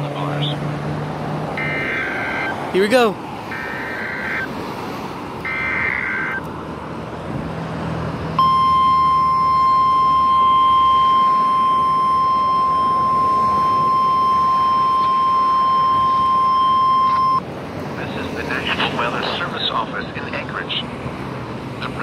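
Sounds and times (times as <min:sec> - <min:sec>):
steady warning alarm tone: 0:01.6 - 0:02.6, 0:03.5 - 0:04.5, 0:05.4 - 0:06.4, 0:08.4 - 0:17.4
warbling data chirp: 0:08.4 - 0:17.4
radio hiss: 0:18.0 - 0:20.9.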